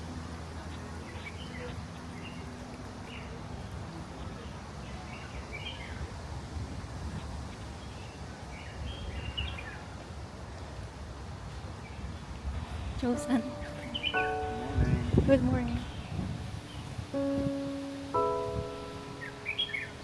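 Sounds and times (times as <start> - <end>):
small birds chirping: 13.0 - 20.0.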